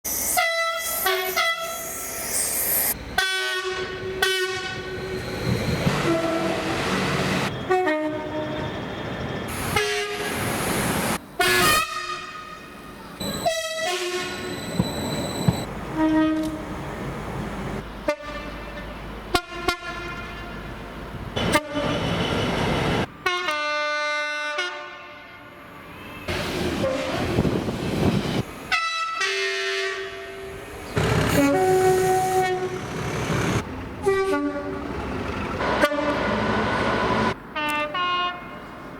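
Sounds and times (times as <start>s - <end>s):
trains passing: 0.1s - 19.4s, 20.4s - 23.6s, 25.4s - 38.9s
train horns: 3.2s - 5.0s, 5.9s - 8.8s, 9.6s - 10.5s, 11.4s - 14.5s, 16.0s - 16.6s, 18.0s - 20.6s, 21.4s - 25.6s, 26.8s - 27.3s, 28.7s - 32.8s, 34.0s - 34.8s, 35.6s - 38.6s.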